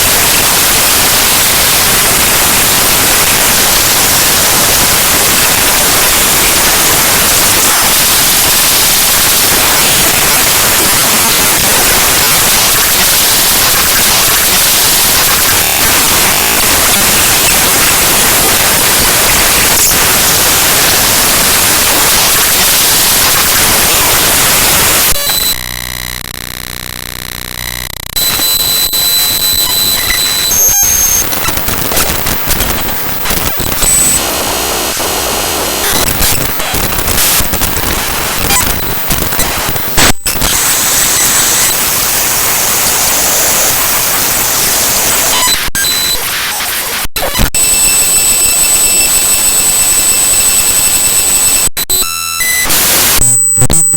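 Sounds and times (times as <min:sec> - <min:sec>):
harsh static-like noise: 0:00.0 - 0:53.9
buzzy repeating pattern: 0:10.9 - 0:34.2.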